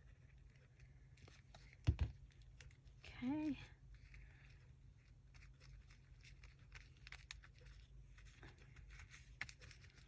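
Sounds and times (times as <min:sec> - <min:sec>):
paper rustling: 0:04.0 - 0:10.0.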